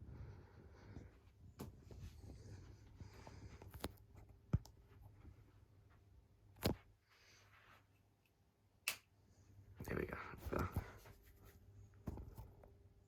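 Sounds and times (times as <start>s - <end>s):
sharp clicks: 8.8s - 9.1s.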